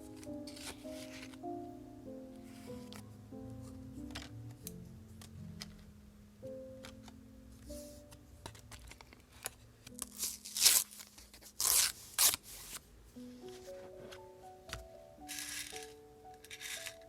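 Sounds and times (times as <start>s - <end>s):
soft background music: 0.0s - 17.0s
scissors cutting paper: 9.4s - 12.4s, 15.3s - 17.0s.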